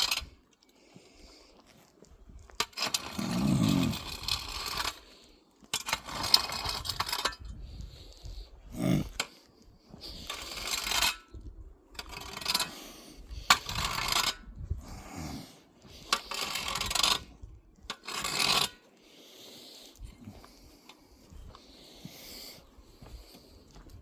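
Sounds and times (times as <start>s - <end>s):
scraping strokes: 2.6s - 8.2s, 10.1s - 11.3s, 12.0s - 14.4s, 15.9s - 18.9s.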